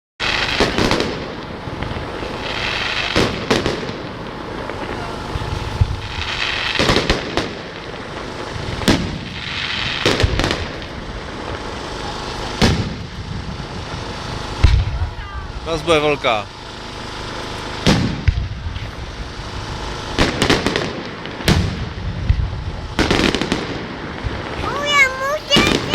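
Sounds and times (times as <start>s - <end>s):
fireworks bursting with bangs: 0.2s - 15.6s, 16.6s - 25.9s
fireworks crackling: 0.2s - 25.9s.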